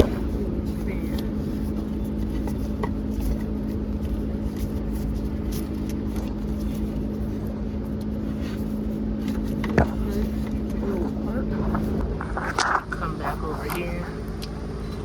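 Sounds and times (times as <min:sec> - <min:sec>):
machine hum: 0:00.0 - 0:15.0.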